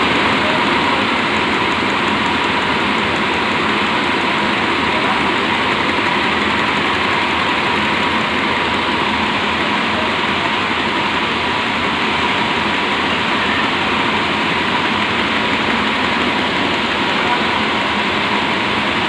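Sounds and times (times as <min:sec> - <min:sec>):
winding machine whirring: 0:00.0 - 0:19.0.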